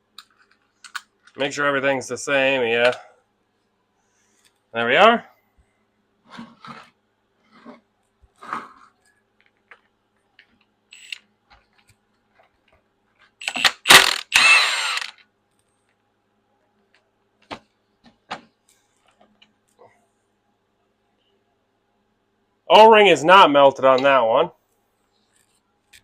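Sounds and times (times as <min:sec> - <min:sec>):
rasping burst: 0:13.5 - 0:15.1.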